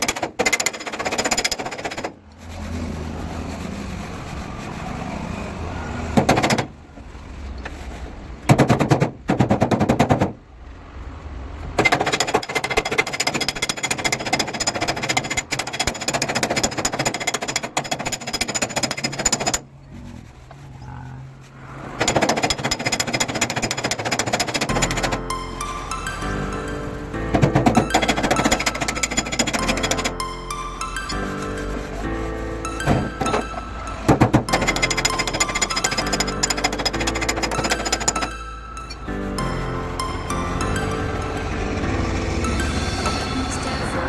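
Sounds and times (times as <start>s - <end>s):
power tool rattling: 0.0s - 2.8s, 11.8s - 19.7s, 22.0s - 25.4s, 26.1s - 30.2s, 32.8s - 38.4s.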